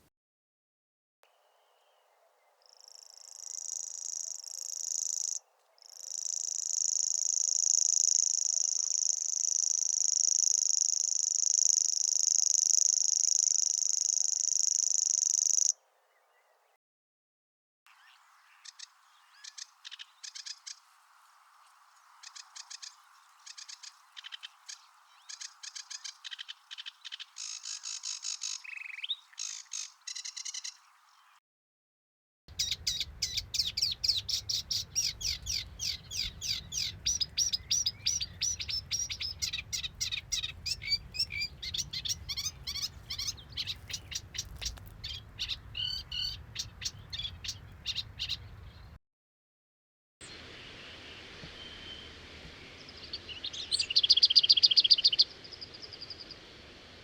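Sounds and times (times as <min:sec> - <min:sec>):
songbird chirping song: 0:01.2 - 0:16.8, 0:17.9 - 0:31.4, 0:32.5 - 0:49.0, 0:50.2 - 0:57.0
bird chattering notes: 0:32.5 - 0:48.5.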